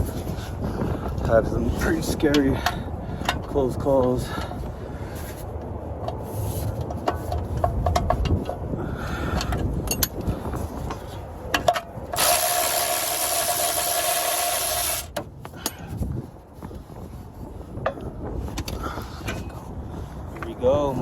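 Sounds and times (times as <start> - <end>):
power tool running: 12.2 - 15.1.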